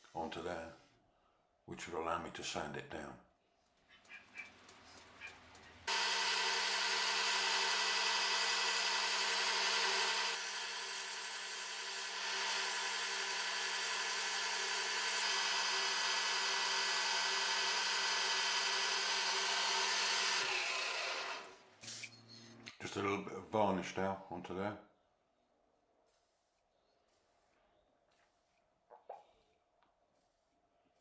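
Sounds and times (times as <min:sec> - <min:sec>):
lathe humming: 0:05.9 - 0:21.6.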